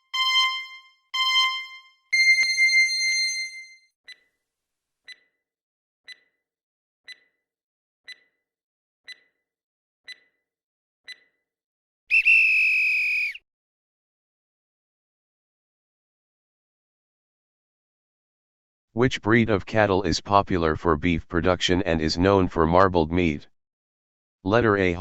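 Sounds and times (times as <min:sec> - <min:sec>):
short timer ticks: 0:04.1 - 0:04.3, 0:05.1 - 0:05.4, 0:06.1 - 0:06.4, 0:07.1 - 0:07.4, 0:08.1 - 0:08.4, 0:09.1 - 0:09.4, 0:10.1 - 0:10.4, 0:11.1 - 0:11.4.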